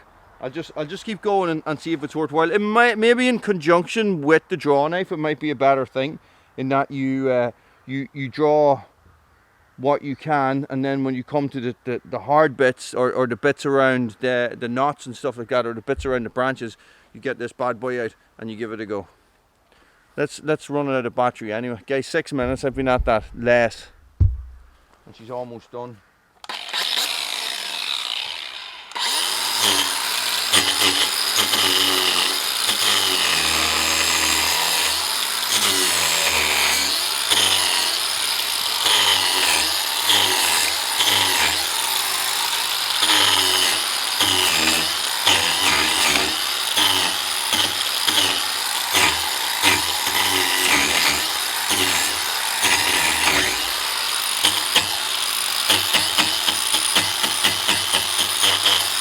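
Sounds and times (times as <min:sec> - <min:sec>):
angle grinder stripping bark: 0:26.4 - 0:59.0.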